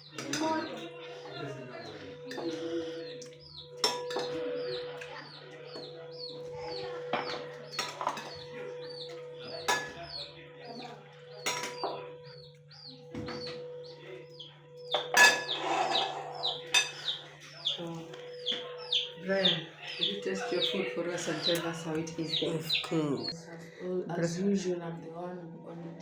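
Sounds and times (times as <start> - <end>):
high bird chirps: 2.6 - 10.4, 11.7 - 23.4.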